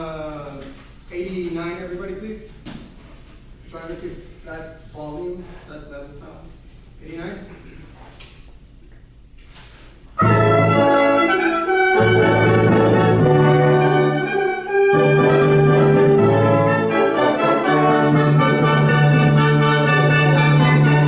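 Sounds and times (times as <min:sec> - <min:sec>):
wind band playing with brass: 0:10.2 - 0:21.0.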